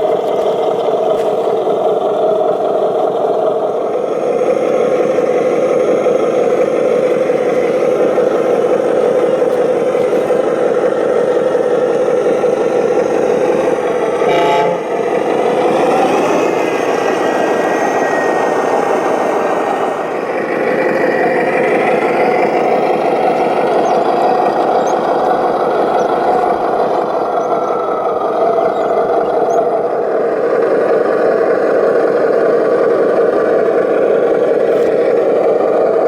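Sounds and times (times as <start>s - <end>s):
model truck motor running: 0.0s - 36.0s
horn-like tone: 14.2s - 15.0s.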